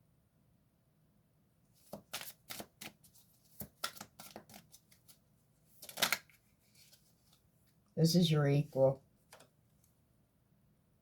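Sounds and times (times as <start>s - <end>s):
cards being shuffled: 1.8s - 7.4s, 9.3s - 9.5s.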